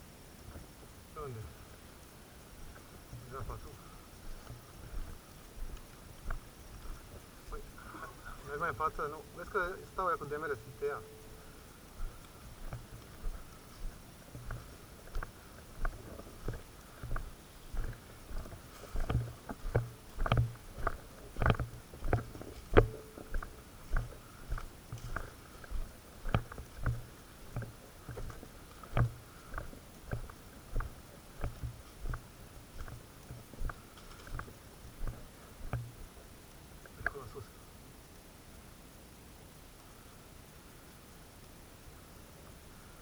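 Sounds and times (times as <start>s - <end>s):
footsteps through grass: 2.6s - 10.7s, 11.4s - 35.9s.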